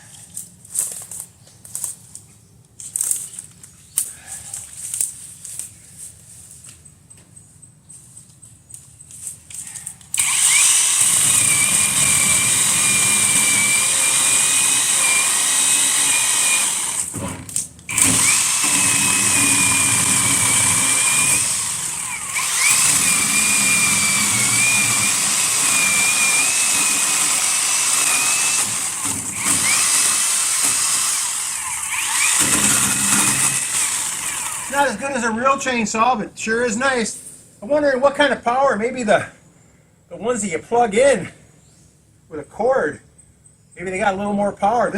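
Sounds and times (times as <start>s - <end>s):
chainsaw cutting wood: 10.1s - 35.0s.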